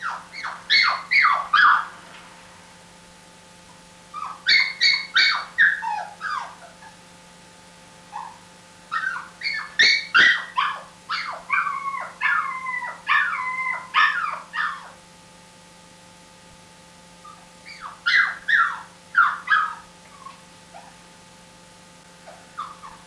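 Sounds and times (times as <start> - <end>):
dog whining and whimpering: 0.0 - 1.9, 4.2 - 7.0, 8.1 - 15.0, 17.2 - 21.0, 22.2 - 23.0.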